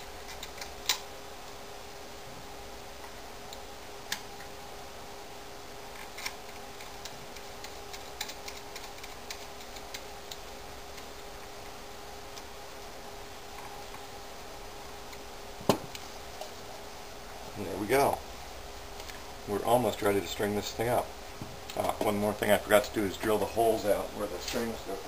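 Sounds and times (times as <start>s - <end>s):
steady hum: 0.0s - 25.0s
screwdriver and small parts clicking: 6.0s - 10.4s.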